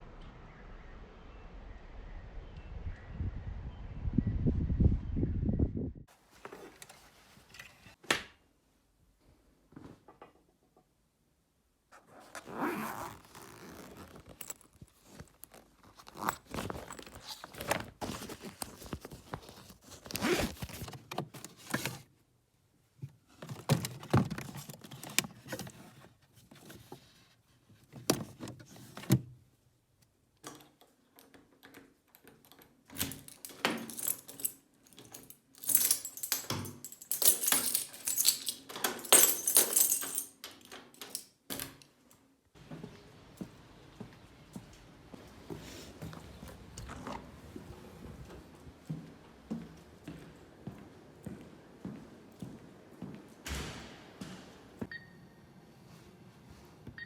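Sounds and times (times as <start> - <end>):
rustling: 11.9 - 22.1
objects clinking and knocking: 31.2 - 41.4.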